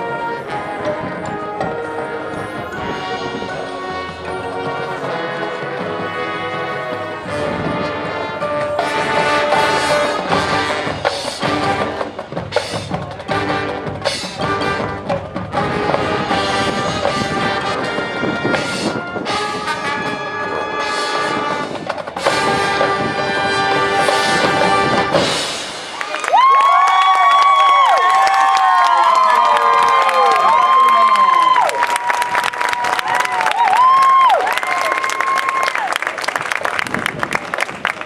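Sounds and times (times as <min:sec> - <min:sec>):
loud held brass chord: 0:00.0 - 0:12.0
marching band playing: 0:00.0 - 0:26.5.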